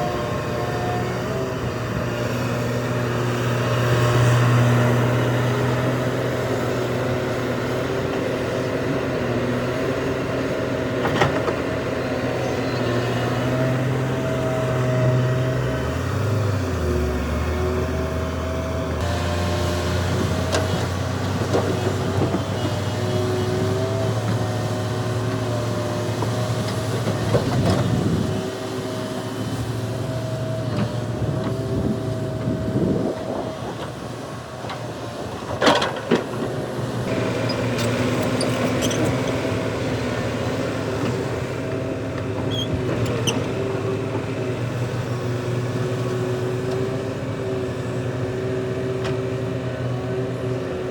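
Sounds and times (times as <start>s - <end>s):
excavator diesel engine running: 0.0s - 50.9s
hydraulic whine: 37.0s - 44.3s.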